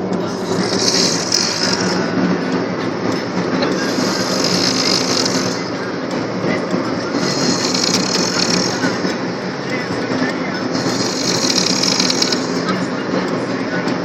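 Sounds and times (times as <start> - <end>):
steady rumbling noise: 0.0 - 14.0
man snoring: 0.4 - 2.0, 3.7 - 5.7, 7.2 - 8.9, 10.8 - 12.6.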